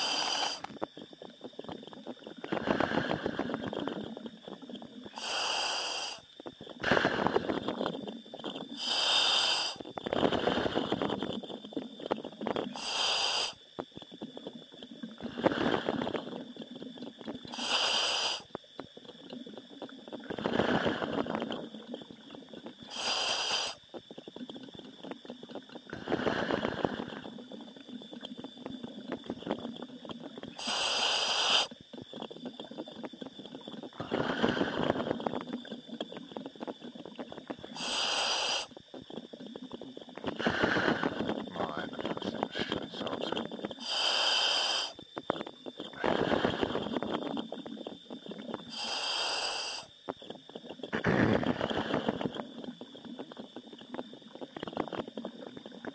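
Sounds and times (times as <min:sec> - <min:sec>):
diving regulator valve hiss: 0:00.0 - 0:55.9
exhaled air bubbling: 0:00.0 - 0:55.9.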